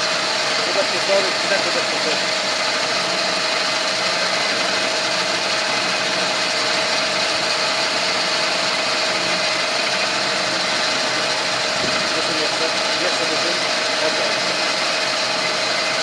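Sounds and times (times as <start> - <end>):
band saw running: 0.0 - 16.0.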